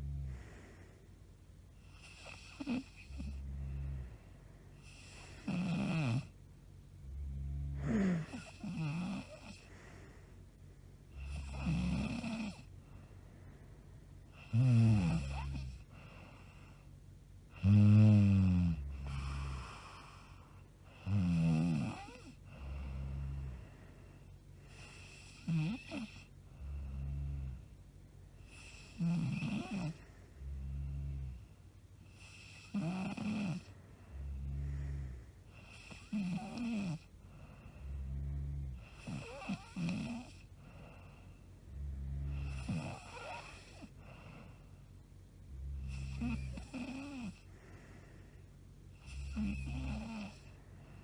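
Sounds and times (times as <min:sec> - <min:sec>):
woman snoring loudly: 0:02.0 - 0:04.1, 0:04.9 - 0:06.3, 0:07.1 - 0:09.7, 0:11.2 - 0:12.7, 0:14.4 - 0:15.8, 0:17.5 - 0:23.6, 0:24.7 - 0:27.6, 0:28.5 - 0:31.4, 0:32.1 - 0:37.1, 0:37.8 - 0:40.5, 0:41.8 - 0:43.9, 0:45.6 - 0:47.5, 0:49.0 - 0:50.5.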